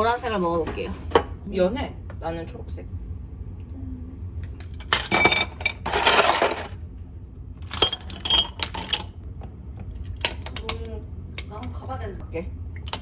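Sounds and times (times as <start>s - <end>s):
glassware clinking: 5.0s - 6.7s, 7.7s - 9.1s.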